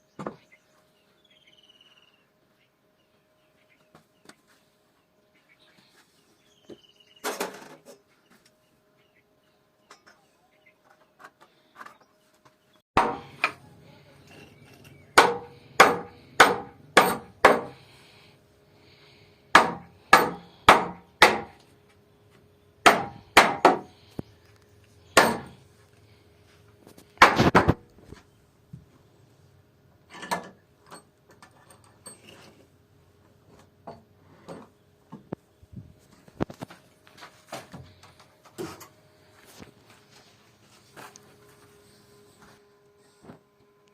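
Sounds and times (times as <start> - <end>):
hammer striking wood: 13.0 - 13.6, 15.2 - 17.8, 19.5 - 21.6, 22.8 - 23.9, 25.2 - 25.5.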